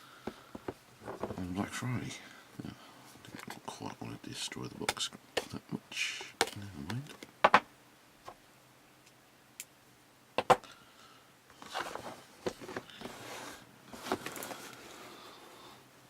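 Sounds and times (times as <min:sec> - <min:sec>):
packaging rustling and sliding: 0:11.6 - 0:15.3.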